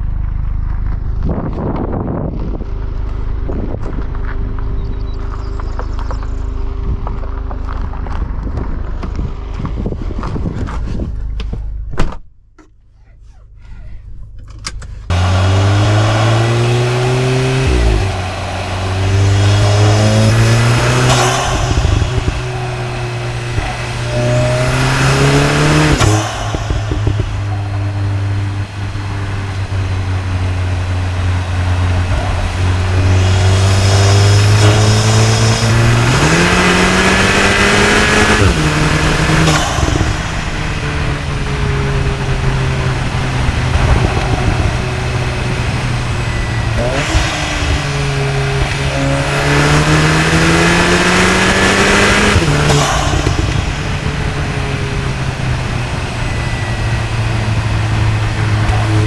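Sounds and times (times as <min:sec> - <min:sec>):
high turbo whine: 0:14.7 - 0:59.0
turbocharged car engine revving: 0:15.1 - 0:59.0.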